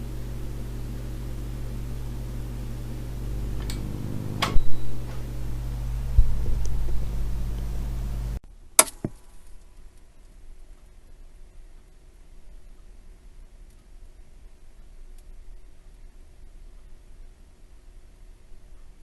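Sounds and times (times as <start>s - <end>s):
low hum: 0.0s - 8.4s
tv static: 0.0s - 8.4s
sharp click: 3.6s - 5.2s.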